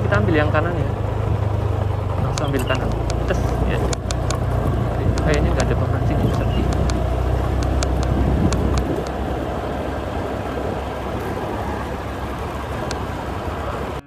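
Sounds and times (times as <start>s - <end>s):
vehicle engine and road rumble: 0.0s - 14.0s.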